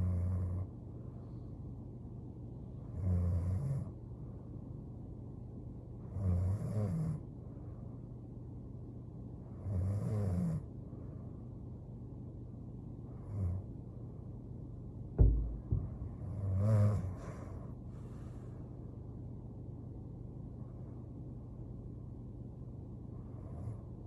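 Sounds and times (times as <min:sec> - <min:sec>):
dull thump: 0:15.2 - 0:16.3.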